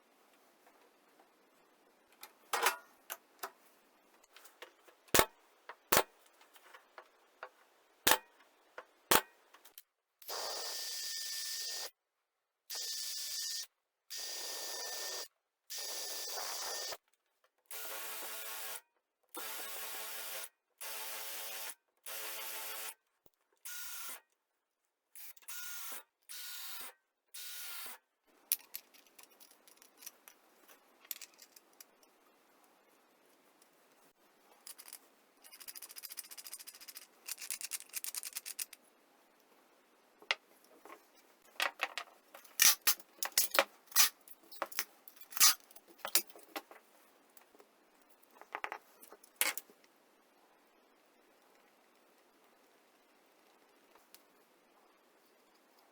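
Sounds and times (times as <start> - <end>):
hard parts clicking and rattling: 34.6 - 38.8, 40.2 - 46.8.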